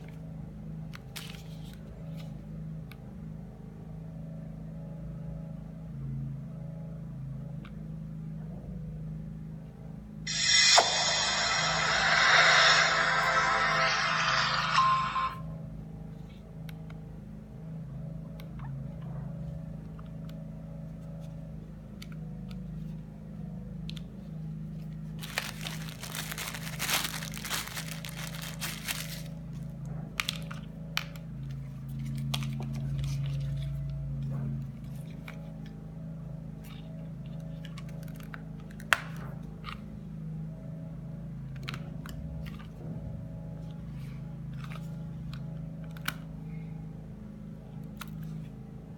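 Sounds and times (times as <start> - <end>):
low steady hum: 0.0 - 48.9
plastic packaging crinkling and tearing: 25.2 - 30.6.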